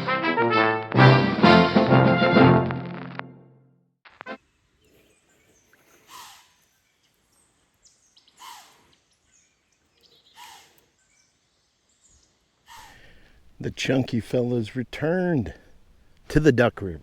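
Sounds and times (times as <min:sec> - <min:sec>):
faint outdoor background: 0:03.3 - 0:17.0
bird calling: 0:04.8 - 0:13.6.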